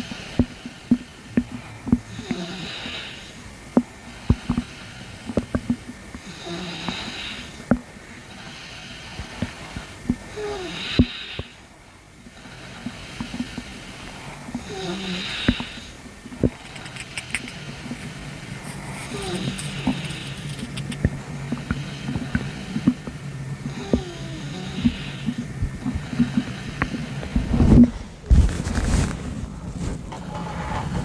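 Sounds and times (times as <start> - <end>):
slow breathing: 0.0 - 31.0
stomach gurgling: 14.4 - 29.0.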